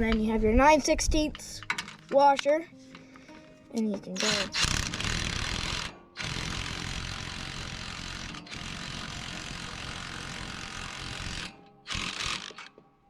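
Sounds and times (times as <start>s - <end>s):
ratchet wrench clicking: 4.2s - 12.7s.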